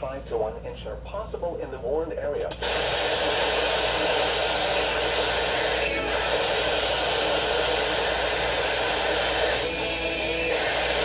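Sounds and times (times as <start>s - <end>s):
radio static hiss: 2.5s - 11.0s.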